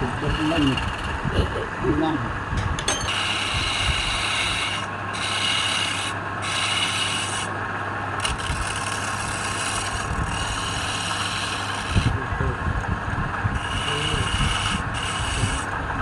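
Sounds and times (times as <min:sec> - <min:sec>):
tool rubbing on turning wood: 0:00.0 - 0:01.5, 0:03.0 - 0:07.5, 0:08.2 - 0:12.2, 0:13.6 - 0:15.8
wood lathe humming: 0:00.0 - 0:02.0, 0:03.1 - 0:16.0.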